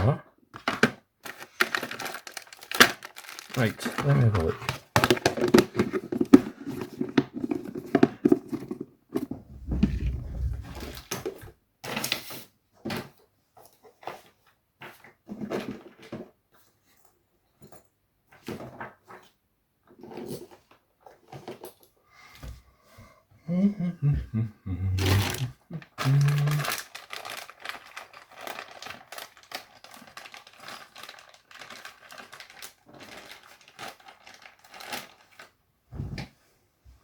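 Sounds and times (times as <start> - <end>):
plastic bag crinkling: 1.2 - 6.2, 25.0 - 35.5
low voice-like sounds: 3.5 - 4.7, 9.5 - 11.1, 23.4 - 26.8.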